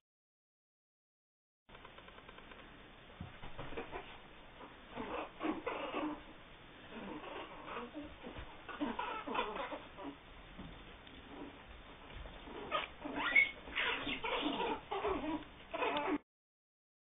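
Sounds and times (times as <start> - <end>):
small pet squeaking: 4.9 - 6.2, 6.9 - 10.2, 12.4 - 16.2.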